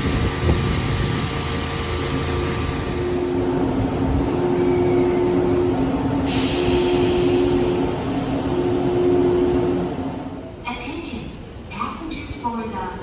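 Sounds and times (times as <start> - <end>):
electric train equipment humming: 0.0 - 11.7
air hiss: 6.2 - 8.2.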